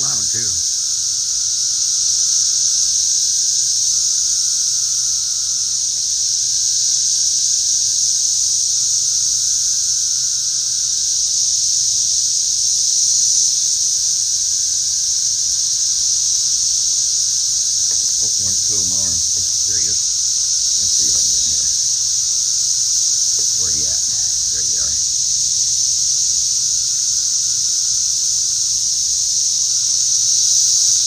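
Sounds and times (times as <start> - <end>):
cicadas droning: 0.0 - 31.0.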